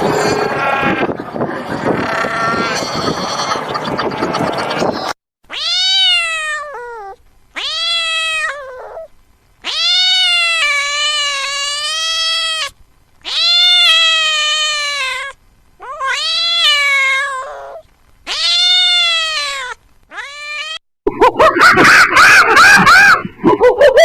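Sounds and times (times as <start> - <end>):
cat meowing: 2.0 - 3.5, 5.5 - 20.8.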